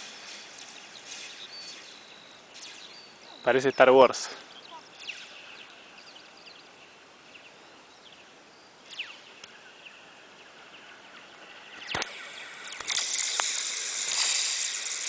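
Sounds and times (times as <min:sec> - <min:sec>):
struck wire laser-like zips: 0:00.0 - 0:01.9, 0:11.8 - 0:15.0.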